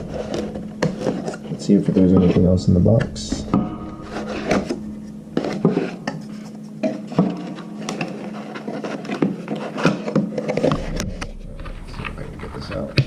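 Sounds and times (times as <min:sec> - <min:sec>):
hands rummaging through cardboard box: 0:00.0 - 0:03.1, 0:05.4 - 0:11.0
faint steady hum: 0:00.0 - 0:13.0.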